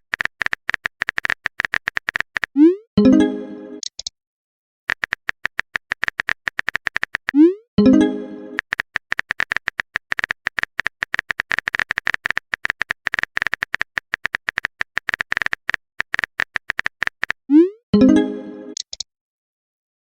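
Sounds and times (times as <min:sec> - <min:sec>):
phone keyboard typing clicks: 0:00.0 - 0:02.6, 0:03.8 - 0:04.1, 0:04.9 - 0:07.4, 0:08.6 - 0:17.5, 0:18.8 - 0:19.1
message alert chime: 0:03.0 - 0:03.8, 0:07.4 - 0:08.6, 0:17.5 - 0:18.8.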